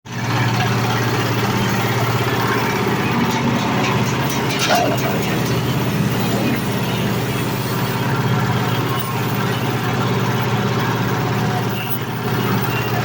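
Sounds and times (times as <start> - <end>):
machine motor drone: 0.1 - 13.0
machine clattering: 1.2 - 9.5.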